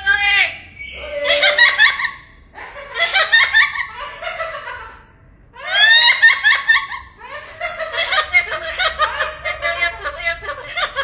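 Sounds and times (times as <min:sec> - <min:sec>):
bird laughing calls: 0:00.8 - 0:04.2.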